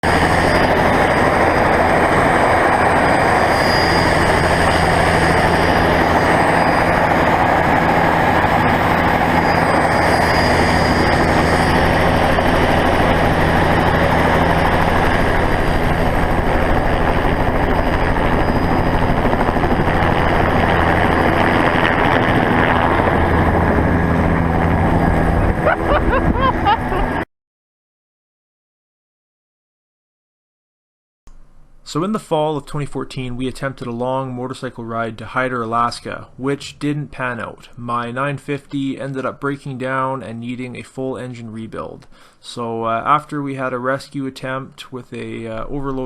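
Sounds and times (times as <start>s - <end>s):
helicopter running: 0.0s - 27.2s.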